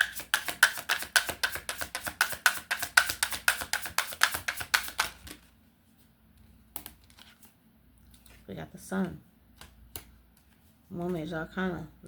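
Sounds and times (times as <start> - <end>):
cards being shuffled: 0.0 - 5.5.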